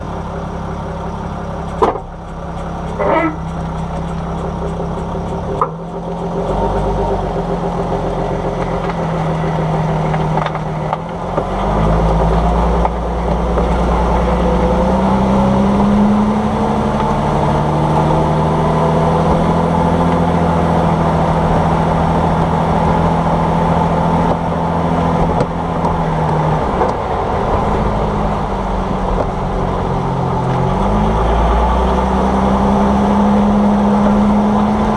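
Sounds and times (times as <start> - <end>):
vehicle engine and road noise: 0.0 - 34.9.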